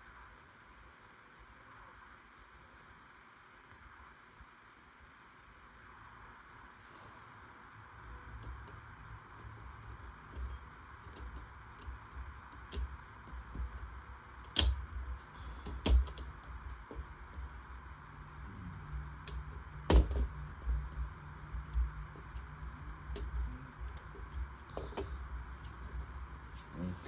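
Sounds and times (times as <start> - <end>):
plastic pieces snapping together: 14.4 - 16.3.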